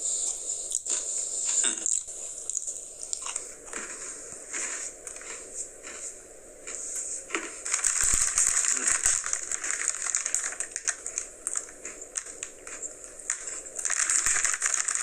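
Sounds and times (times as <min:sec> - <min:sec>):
person chewing crunchy cookie: 0:00.2 - 0:15.0.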